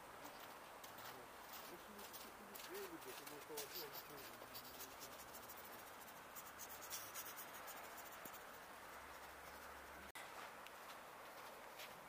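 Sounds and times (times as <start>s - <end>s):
faint hiss: 0.0s - 12.0s.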